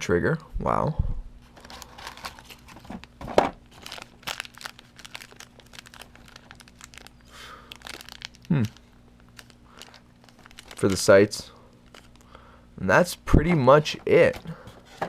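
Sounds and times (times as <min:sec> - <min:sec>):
packaging crinkling: 0:01.5 - 0:12.4.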